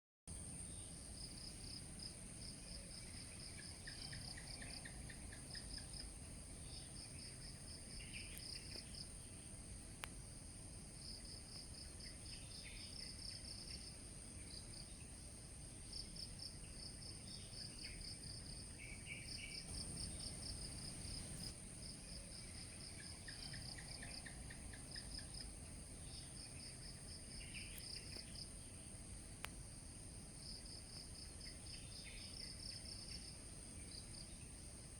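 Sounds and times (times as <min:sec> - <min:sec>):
insects chirping: 0:00.3 - 0:34.9
faint sharp clicks: 0:10.0 - 0:10.2, 0:29.4 - 0:29.6.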